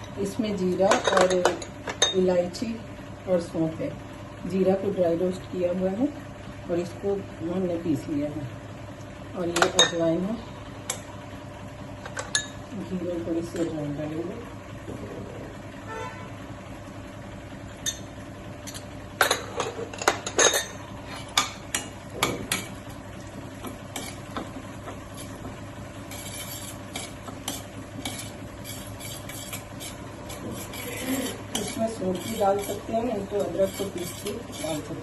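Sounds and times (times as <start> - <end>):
metal spoon stirring in pan: 23.5 - 35.0.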